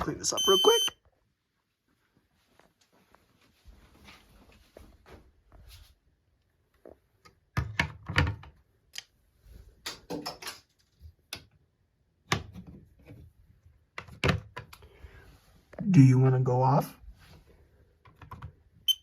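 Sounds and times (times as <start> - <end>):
objects knocking and clattering: 9.8 - 11.2.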